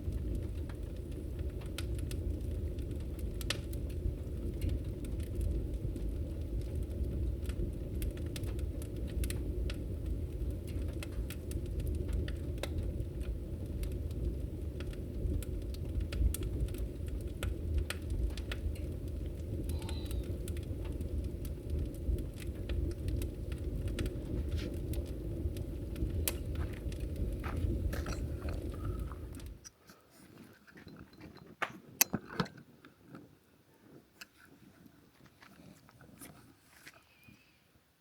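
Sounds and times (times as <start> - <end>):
steady low rumble: 0.0 - 29.7
campfire crackling and popping: 0.0 - 29.8.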